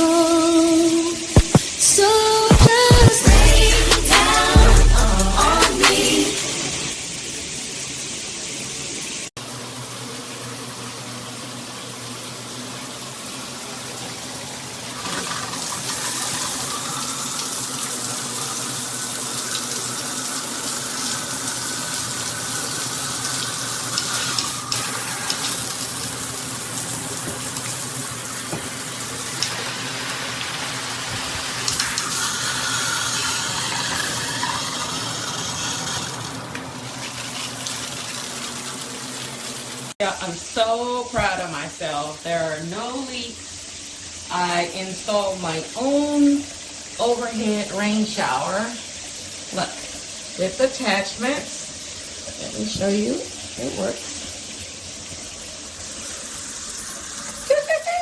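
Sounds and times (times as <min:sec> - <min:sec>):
water spraying from shower head: 0:00.3 - 0:09.3, 0:15.1 - 0:43.3.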